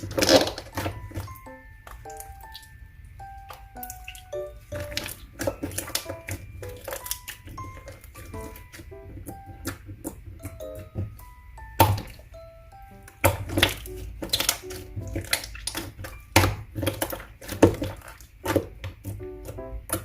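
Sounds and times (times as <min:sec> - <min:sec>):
light playful music: 0:00.0 - 0:20.0
slime squishing pops: 0:13.2 - 0:18.9.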